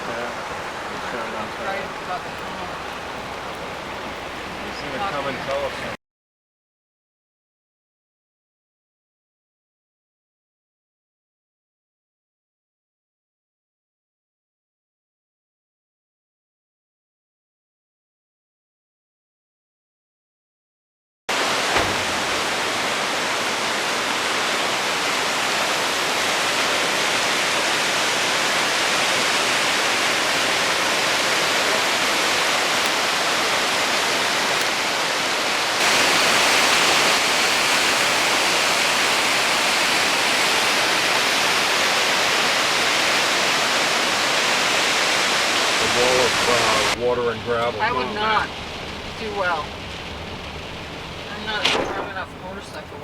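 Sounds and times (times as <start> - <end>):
flood water rushing down rocks: 0.0 - 6.0, 21.3 - 53.0.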